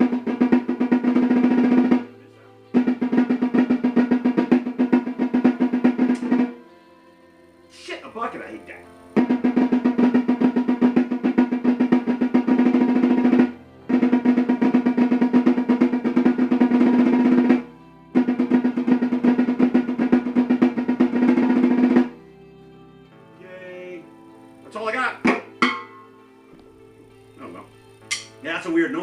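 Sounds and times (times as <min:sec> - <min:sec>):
snare drum rapid strokes: 0:00.0 - 0:02.1, 0:02.8 - 0:06.6, 0:09.2 - 0:22.2.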